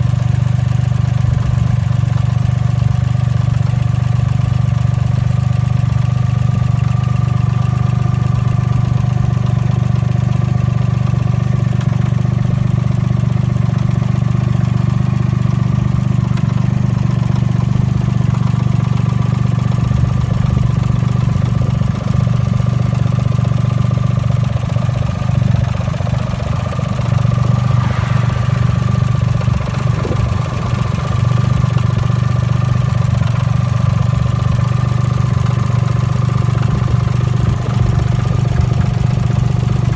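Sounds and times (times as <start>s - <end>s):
car engine idling: 0.0s - 39.9s
thin steady whine: 26.0s - 32.4s.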